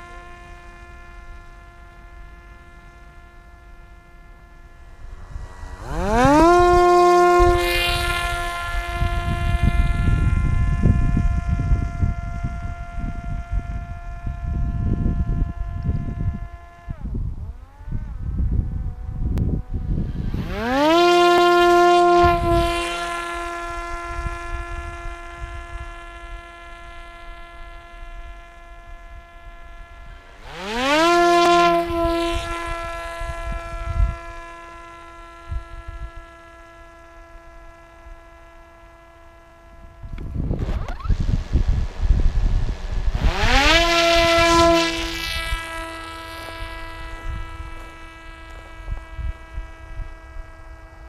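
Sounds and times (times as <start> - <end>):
drone motor and propeller whine: 0.0 - 51.0
low rumble gusts: 39.7 - 50.9.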